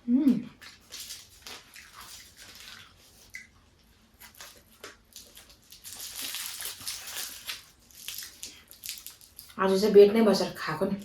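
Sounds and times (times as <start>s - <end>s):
chewing and wet mouth sounds: 0.5s - 9.6s.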